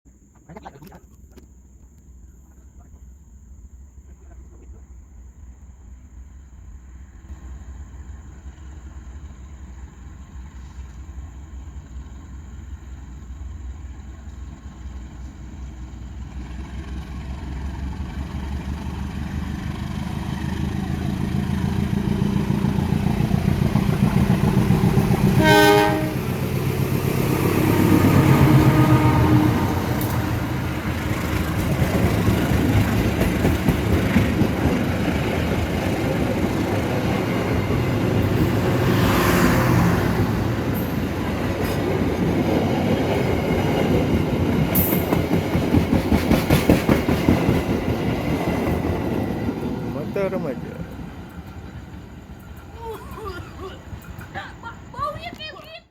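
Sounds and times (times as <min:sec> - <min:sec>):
train engine rumble: 0:02.2 - 0:55.8
train horn blast: 0:25.0 - 0:26.5, 0:27.1 - 0:30.6.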